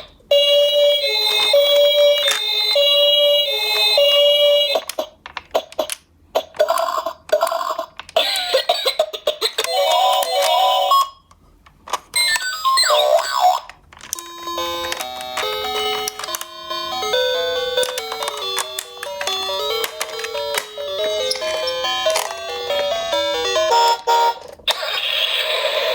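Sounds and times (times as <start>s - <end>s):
toy siren: 0.3s - 4.9s, 12.2s - 13.7s.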